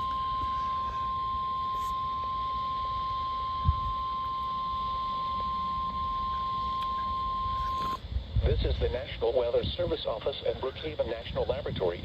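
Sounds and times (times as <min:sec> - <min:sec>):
steady warning alarm tone: 0:00.0 - 0:08.0
receiver hiss: 0:00.0 - 0:12.0.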